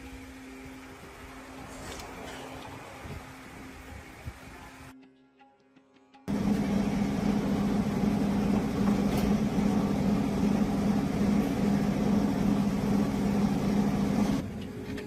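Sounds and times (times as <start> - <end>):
truck engine humming: 6.3 - 14.6.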